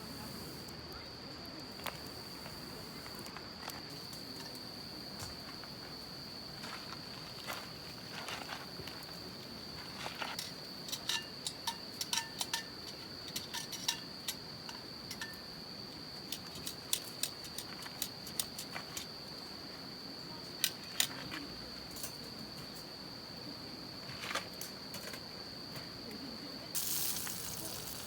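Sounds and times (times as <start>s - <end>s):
metal cooking utensils clinking: 10.4s - 14.4s, 15.1s - 15.4s
high-pitched insect drone: 26.8s - 28.0s.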